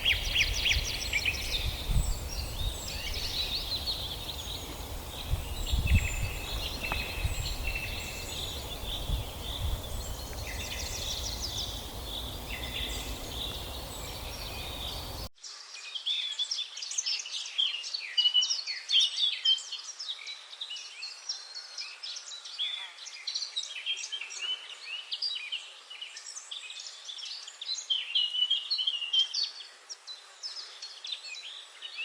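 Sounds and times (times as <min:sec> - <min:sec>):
birds chirping and trilling: 0:00.0 - 0:15.3.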